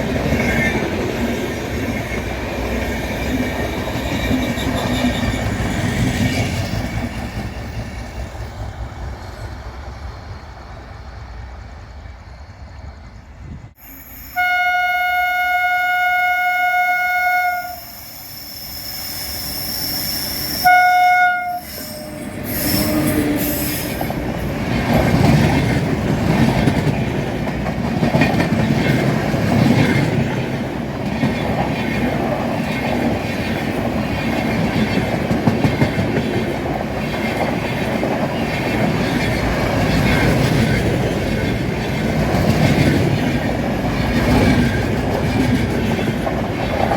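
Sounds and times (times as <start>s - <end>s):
train rumbling past: 0.0s - 46.9s
locomotive air horn blast: 14.0s - 18.0s, 20.5s - 24.0s.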